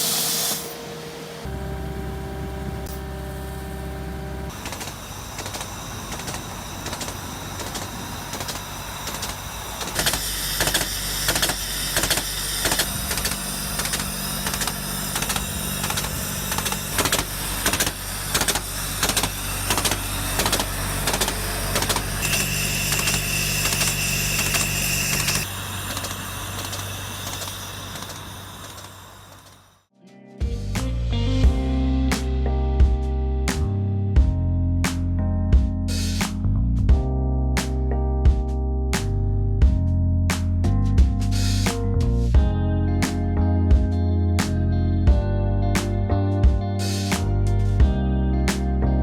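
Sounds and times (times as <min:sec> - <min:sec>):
steady high whine: 0:00.0 - 0:35.0
diesel engine running: 0:01.1 - 0:12.0
sharp mechanical clanks: 0:04.5 - 0:29.6.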